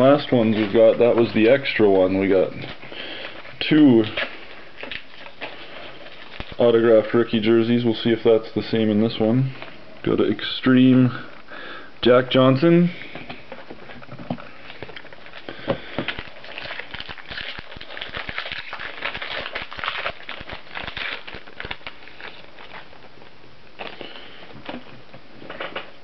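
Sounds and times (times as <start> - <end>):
trading card packaging crackling: 0.0 - 10.9, 13.4 - 26.0.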